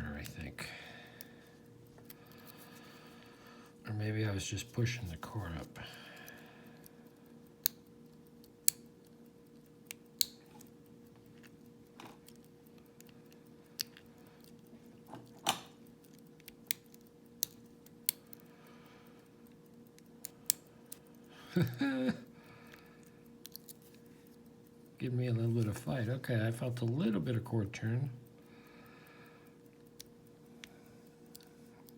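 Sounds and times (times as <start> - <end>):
person murmuring: 21.5 - 22.2.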